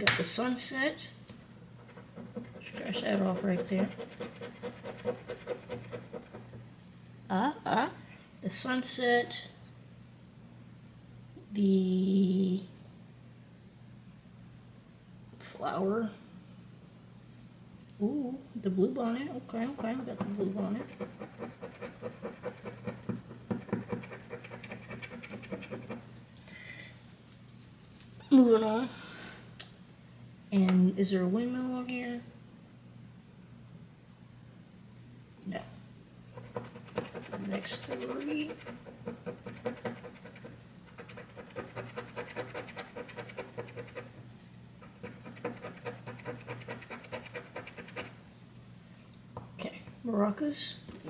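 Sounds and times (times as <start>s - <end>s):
coin scratching lottery ticket: 1.8s - 6.5s, 19.8s - 26.0s, 36.4s - 44.2s, 44.8s - 48.2s.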